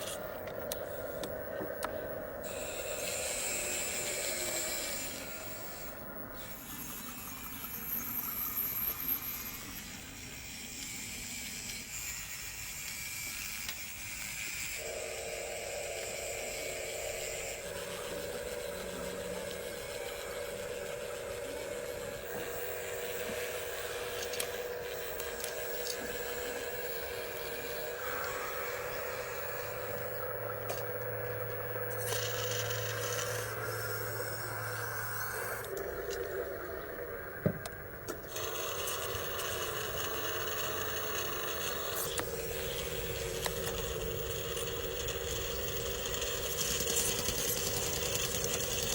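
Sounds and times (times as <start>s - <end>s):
small hydraulic pump whining: 0.0s - 48.9s
hiss: 2.4s - 30.3s.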